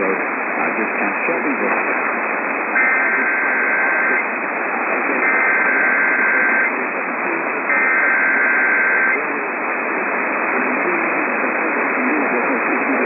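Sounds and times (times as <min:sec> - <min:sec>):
radio static hiss: 0:00.0 - 0:13.0
chord of high steady tones: 0:02.7 - 0:04.4, 0:05.2 - 0:06.8, 0:07.6 - 0:09.3.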